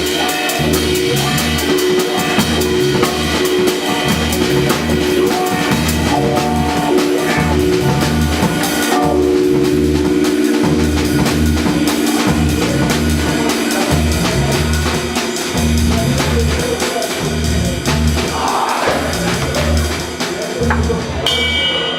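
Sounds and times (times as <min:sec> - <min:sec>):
long held melody notes: 0:00.0 - 0:16.7
steady bass line: 0:00.0 - 0:20.0
drum kit with cymbals and snare: 0:00.0 - 0:21.9.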